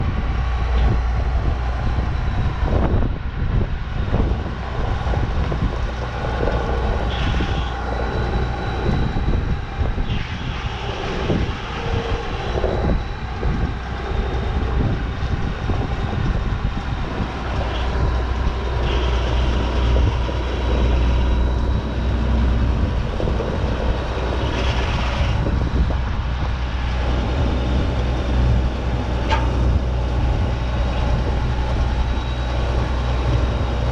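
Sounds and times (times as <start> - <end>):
large engine humming and whining: 0.0 - 33.9.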